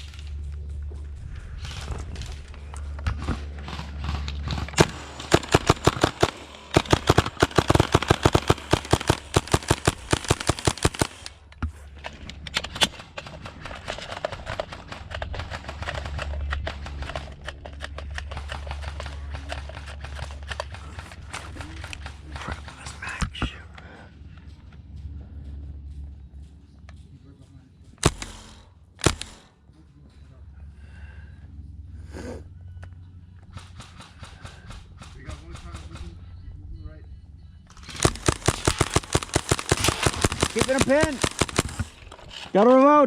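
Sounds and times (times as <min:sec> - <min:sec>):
airsoft rifle shots: 0:03.0 - 0:22.8, 0:28.0 - 0:29.6, 0:37.7 - 0:42.5.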